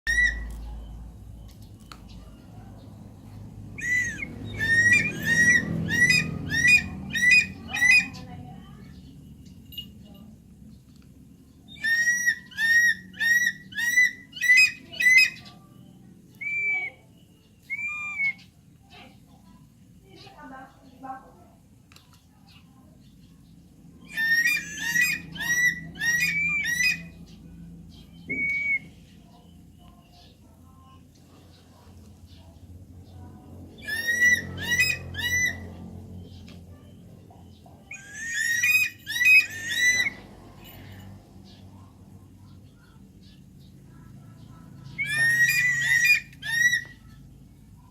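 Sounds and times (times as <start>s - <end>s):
heron squawking: 3.8s - 8.2s, 11.8s - 15.4s, 24.1s - 27.2s, 33.8s - 35.6s, 37.9s - 40.2s, 45.0s - 47.0s.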